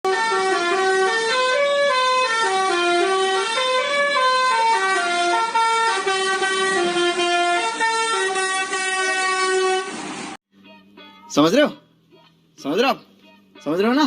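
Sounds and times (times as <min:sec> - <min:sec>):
musical truck horn: 0:00.1 - 0:10.4.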